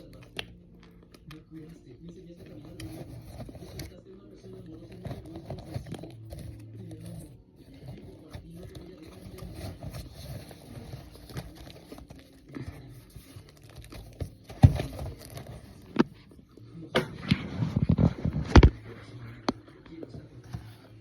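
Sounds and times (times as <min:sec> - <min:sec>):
cornstarch crinkling and crumbling: 0:00.0 - 0:16.1.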